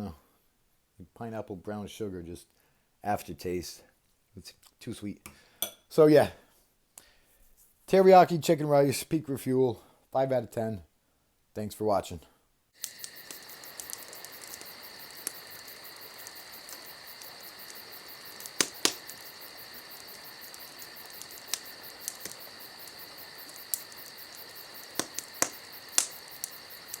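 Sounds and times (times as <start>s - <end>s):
sharp clicks: 12.8s - 19.4s, 20.0s - 22.5s, 23.4s - 27.0s
insects trilling: 12.8s - 27.0s.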